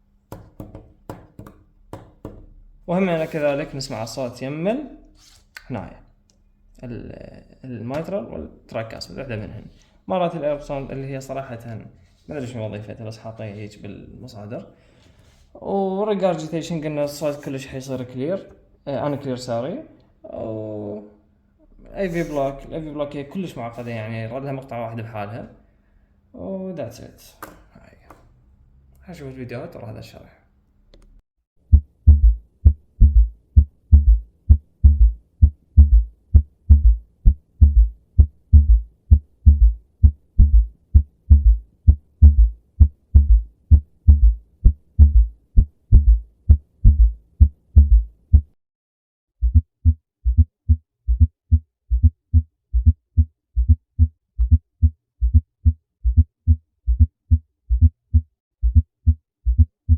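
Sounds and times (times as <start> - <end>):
heartbeat through stethoscope: 31.7 - 48.6, 49.4 - 59.9.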